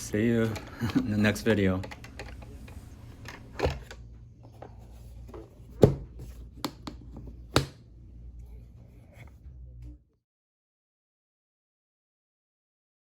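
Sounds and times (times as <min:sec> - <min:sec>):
low steady hum: 0:00.0 - 0:10.2.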